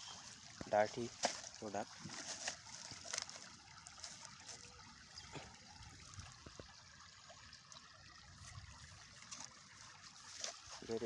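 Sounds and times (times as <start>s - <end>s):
faint river water trickle: 0.0s - 11.0s
small clicks and rustles: 1.2s - 4.7s.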